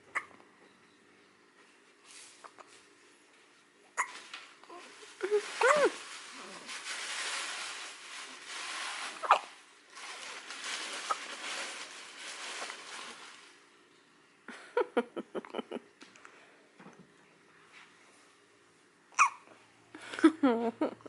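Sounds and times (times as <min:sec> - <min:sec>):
baby hiccuping: 0:00.1 - 0:00.3, 0:09.2 - 0:09.5, 0:19.1 - 0:19.4
soft rustling hiss: 0:01.4 - 0:14.2.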